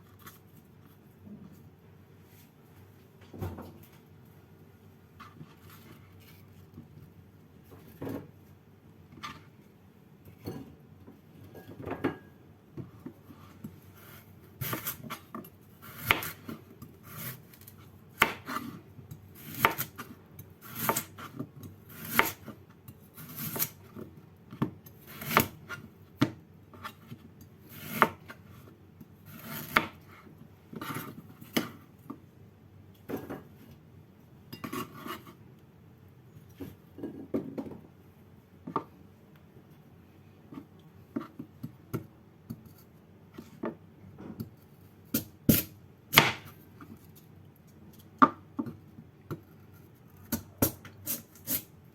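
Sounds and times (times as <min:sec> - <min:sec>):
knife chopping on cutting board: 0:15.8 - 0:17.4, 0:18.2 - 0:18.7, 0:19.4 - 0:20.0, 0:20.6 - 0:22.5, 0:45.2 - 0:46.5.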